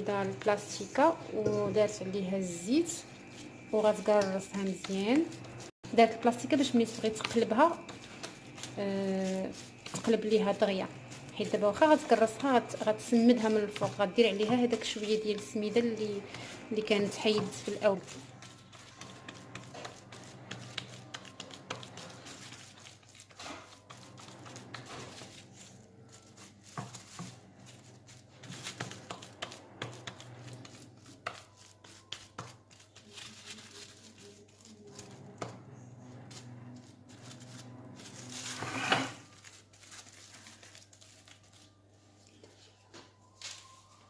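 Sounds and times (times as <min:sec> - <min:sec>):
plastic sheet crinkling: 0:06.5 - 0:35.3, 0:36.1 - 0:42.4.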